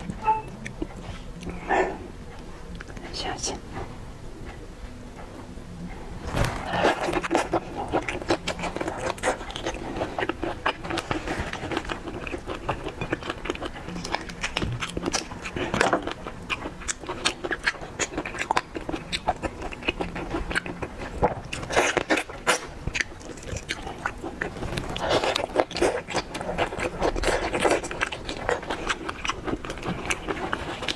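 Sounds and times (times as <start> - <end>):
person chewing wetly: 7.0 - 30.9.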